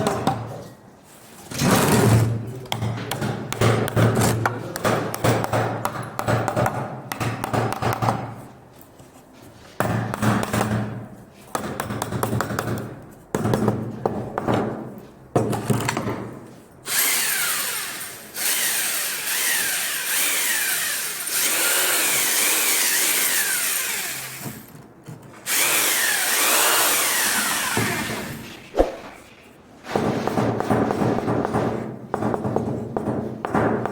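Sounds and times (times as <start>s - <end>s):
power tool running: 16.9s - 24.7s, 25.5s - 28.5s.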